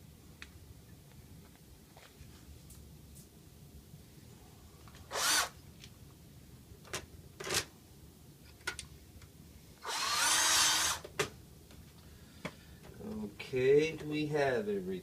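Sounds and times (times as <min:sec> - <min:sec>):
electric screwdriver whirring: 0:05.1 - 0:05.6, 0:09.8 - 0:11.1.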